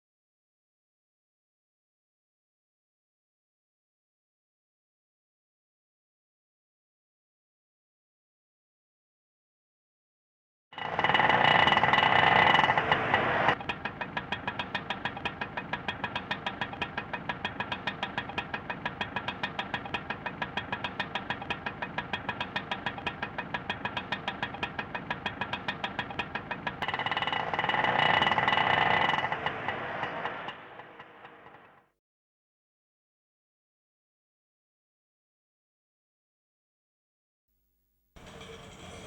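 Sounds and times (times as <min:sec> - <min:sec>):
auto rickshaw engine: 0:10.8 - 0:31.9, 0:38.2 - 0:39.0.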